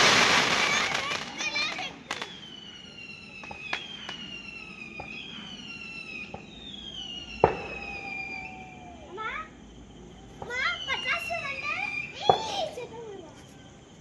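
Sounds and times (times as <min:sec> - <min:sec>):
fireworks cracks and bangs: 0:00.0 - 0:08.5, 0:10.4 - 0:12.9
fireworks whistling: 0:00.0 - 0:14.0.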